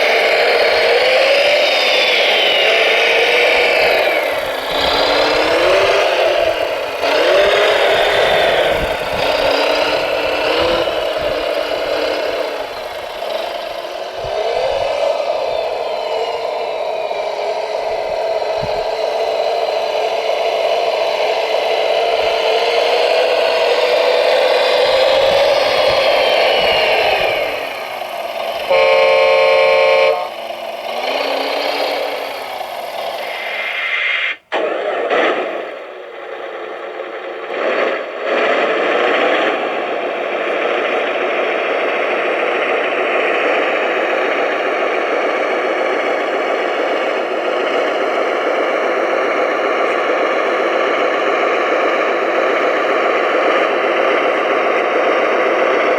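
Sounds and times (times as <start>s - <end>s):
toy vehicle motors whining: 0.0s - 55.9s
loud horn: 28.6s - 30.6s.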